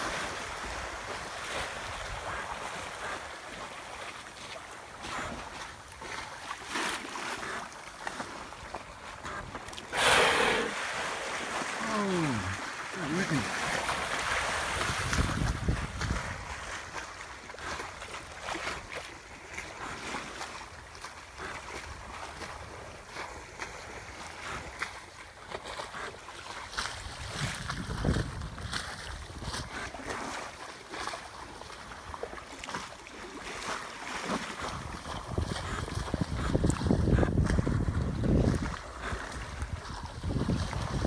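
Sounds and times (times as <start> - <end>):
water splashing against hull: 0.0 - 22.8
wind gusting on microphone: 14.8 - 16.5.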